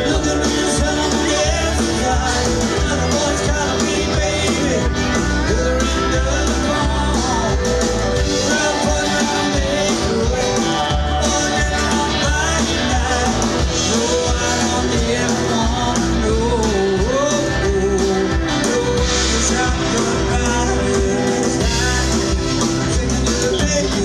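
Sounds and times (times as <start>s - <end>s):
live band playing country music: 0.0s - 24.0s.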